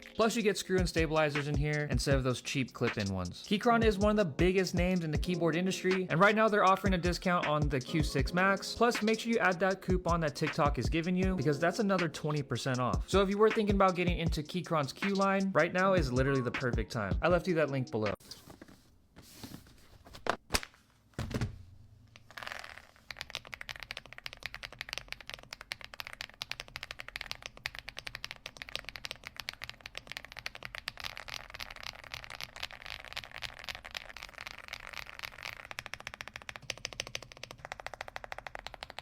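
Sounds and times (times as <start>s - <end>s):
mechanical keyboard typing: 23.1s - 39.0s.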